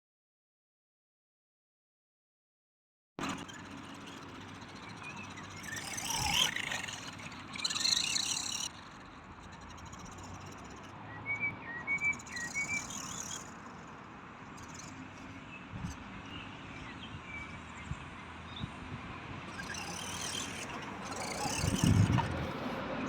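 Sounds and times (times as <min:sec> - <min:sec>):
electric toy car motor whirring: 0:03.2 - 0:11.0, 0:11.8 - 0:17.6, 0:18.5 - 0:22.8
small birds chirping: 0:03.2 - 0:22.8.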